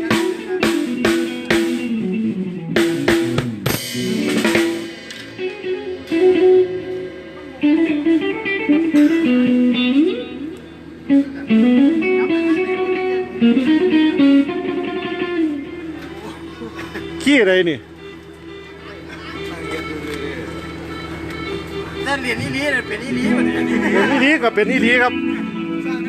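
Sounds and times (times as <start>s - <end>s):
electric plucked-string melody: 0.0s - 26.0s
drum hits: 2.8s - 6.6s.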